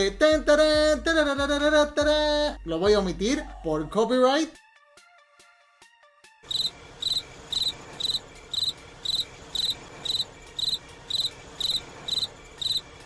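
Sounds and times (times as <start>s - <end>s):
crickets chirping: 6.5s - 12.9s.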